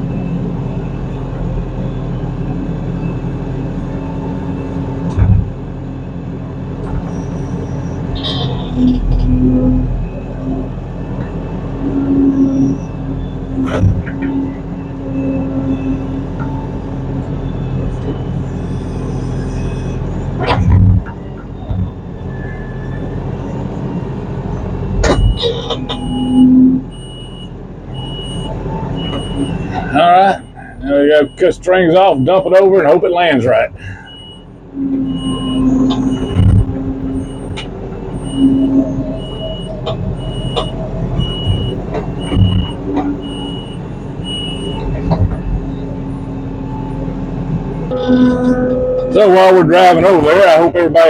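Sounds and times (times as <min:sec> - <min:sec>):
low whine: 0:00.0 - 0:51.0
tractor engine running: 0:00.0 - 0:51.0
short repeating beeps: 0:25.2 - 0:29.6.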